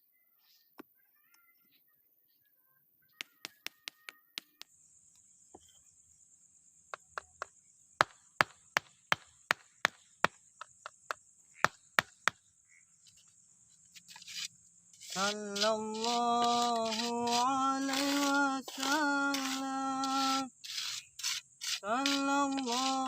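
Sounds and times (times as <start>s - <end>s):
night insects chirring: 3.0s - 23.0s.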